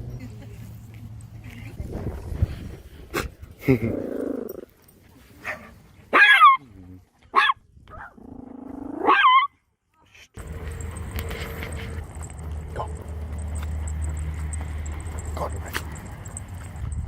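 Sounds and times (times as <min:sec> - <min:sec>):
dog barking: 0:05.4 - 0:06.6, 0:07.3 - 0:08.2.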